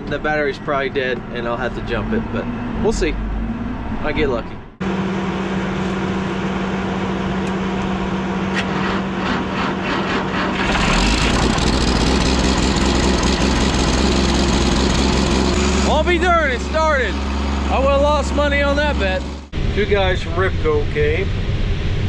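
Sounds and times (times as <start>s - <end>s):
diesel engine cranking and starting: 8.5s - 19.5s.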